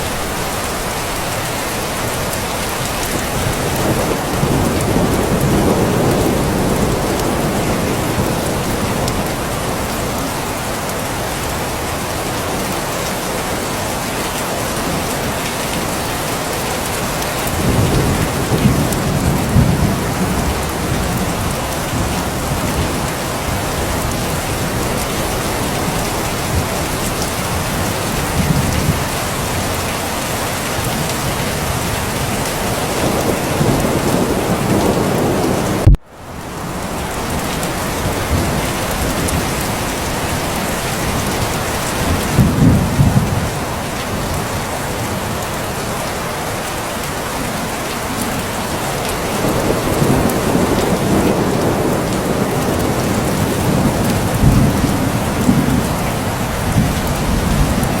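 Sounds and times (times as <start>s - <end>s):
steady rain falling: 0.0s - 58.0s
distant thunder rolling: 3.2s - 10.6s.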